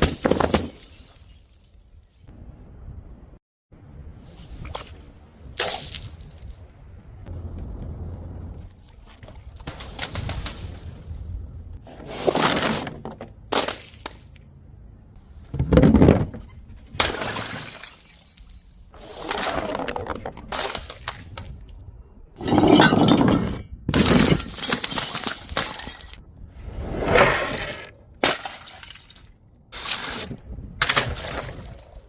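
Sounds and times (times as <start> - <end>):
glass bottles shattering: 17.0 - 18.7, 22.4 - 26.2, 28.2 - 29.3.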